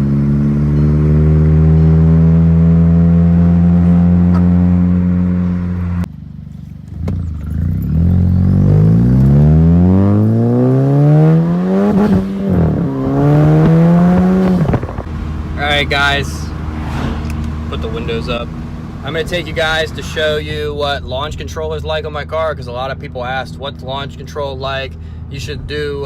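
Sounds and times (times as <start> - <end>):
car engine revving high: 0.0 - 6.1, 7.0 - 20.7.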